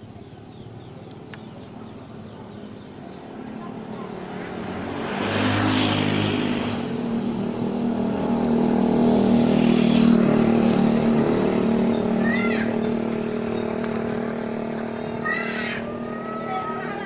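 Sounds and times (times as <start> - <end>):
vehicle engine running: 6.5 - 17.0.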